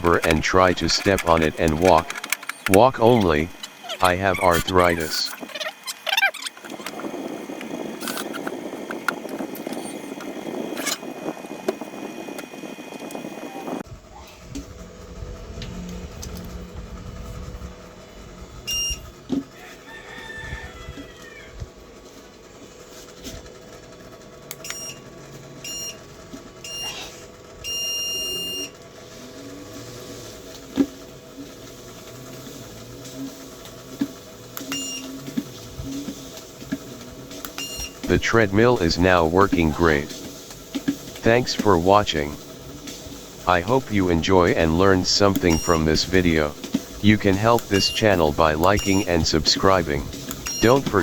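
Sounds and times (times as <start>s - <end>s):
treadmill humming: 13.3s - 20.5s
low hum: 13.8s - 19.3s, 43.4s - 51.0s
electronic beeps: 44.6s - 46.6s, 47.2s - 51.0s.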